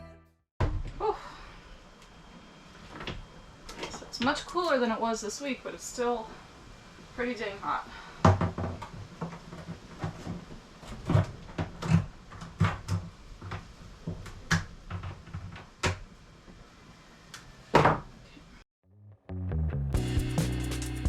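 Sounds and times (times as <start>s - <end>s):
music: 0.0s - 0.5s, 18.8s - 21.0s
demolition knocks on wooden cabinets: 8.2s - 13.1s.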